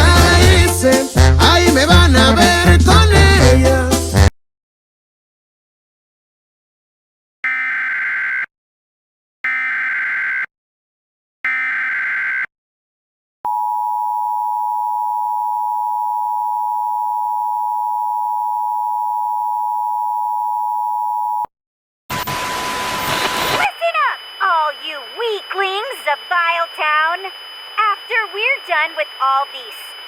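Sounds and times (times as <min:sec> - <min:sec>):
loud burst of noise: 0:22.1 - 0:23.8
screeching data bursts: 0:22.1 - 0:30.0.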